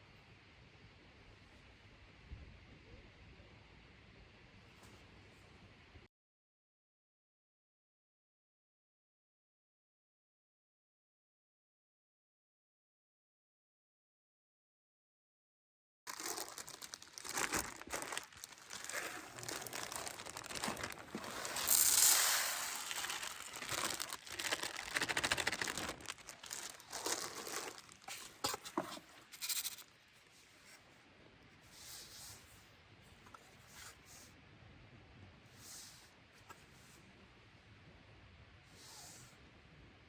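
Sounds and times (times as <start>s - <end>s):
rustling crinkling and tearing: 16.1s - 29.9s.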